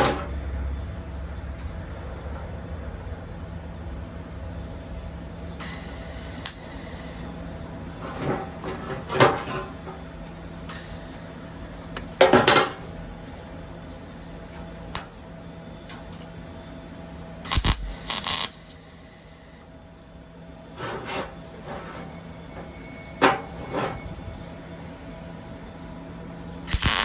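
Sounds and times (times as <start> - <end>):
electrical hum: 0.0 - 27.0
metal parts clanking: 8.0 - 10.0, 12.0 - 12.9, 20.8 - 24.3.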